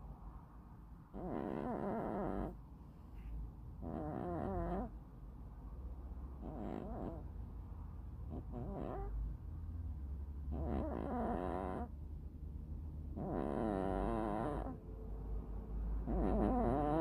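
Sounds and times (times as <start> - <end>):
cat snoring: 1.1 - 2.6, 3.8 - 4.9, 6.4 - 7.2, 8.3 - 9.1, 10.5 - 11.9, 13.2 - 14.8, 16.0 - 17.0.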